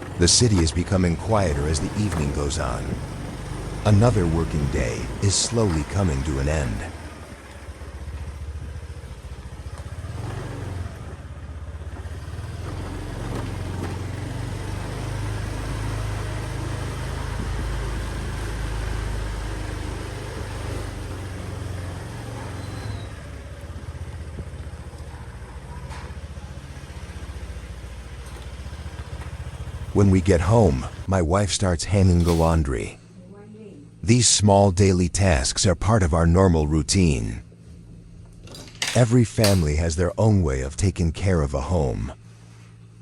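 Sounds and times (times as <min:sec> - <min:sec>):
motorbike engines running: 0:00.0 - 0:31.1
street traffic: 0:00.0 - 0:31.3.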